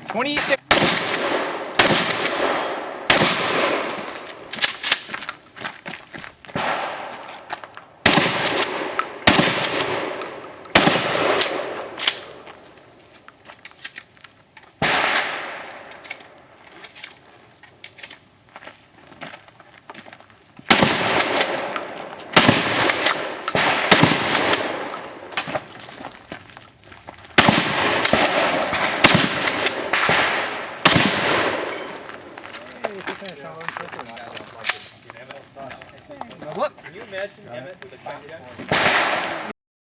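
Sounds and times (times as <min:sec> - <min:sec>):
shotgun shots echoing: 0:00.2 - 0:05.1, 0:06.6 - 0:07.4, 0:08.0 - 0:12.7, 0:14.8 - 0:16.3, 0:20.7 - 0:25.5, 0:27.4 - 0:32.4, 0:38.6 - 0:39.5.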